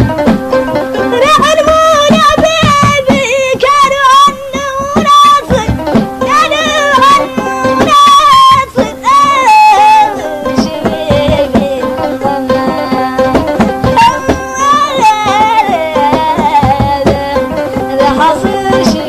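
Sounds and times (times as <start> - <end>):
plucked string instrument: 0.0 - 19.0
high voice singing ornamented melody: 1.2 - 19.0.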